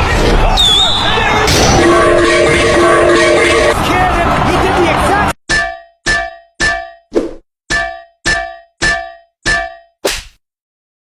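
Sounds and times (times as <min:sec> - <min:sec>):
loud dense noise: 0:00.0 - 0:05.4.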